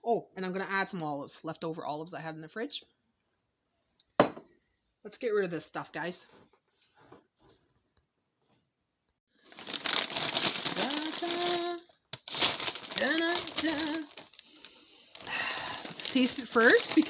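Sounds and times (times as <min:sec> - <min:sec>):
plastic chip bag crinkling: 0:09.4 - 0:17.0.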